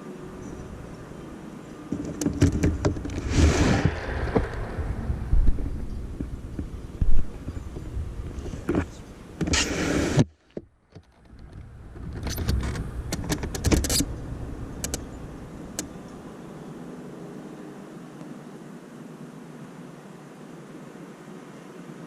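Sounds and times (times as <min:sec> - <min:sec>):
sharp clicks and knocks: 0:01.9 - 0:04.6, 0:06.2 - 0:14.1, 0:14.8 - 0:15.0
wind buffeting microphone: 0:01.9 - 0:10.2, 0:11.3 - 0:16.0.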